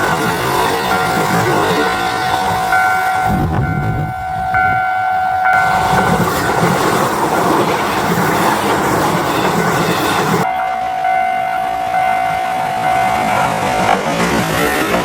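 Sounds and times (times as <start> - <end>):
train wheels clattering: 0.0 - 10.5, 12.0 - 15.0
crossing bell two-tone chime: 0.8 - 6.1, 10.4 - 13.9.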